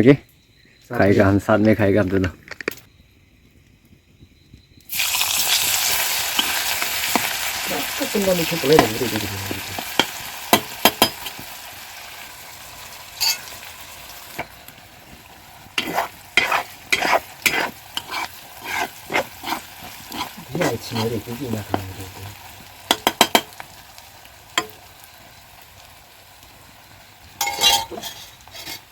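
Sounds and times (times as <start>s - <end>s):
food sizzling in hot oil: 4.6s - 28.9s
utensil knocking against pan: 10.0s - 11.3s, 22.9s - 23.6s.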